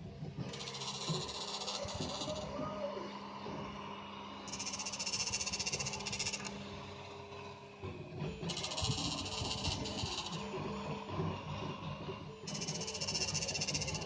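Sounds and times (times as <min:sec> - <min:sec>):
high-pitched printer noise: 0:00.0 - 0:14.0
printer motor hum: 0:00.0 - 0:14.0.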